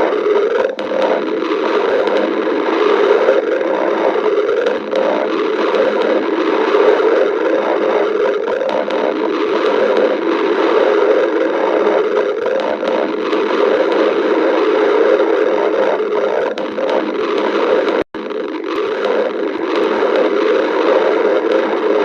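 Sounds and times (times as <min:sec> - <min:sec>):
stomach growling: 0:00.0 - 0:22.0.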